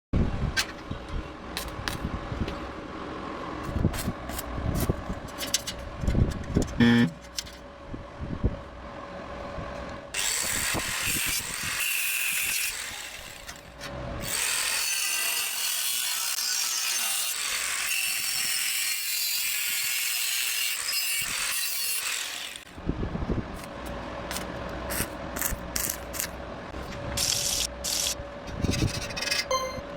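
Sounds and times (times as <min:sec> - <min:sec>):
power tool cutting steel: 0:10.2 - 0:22.7.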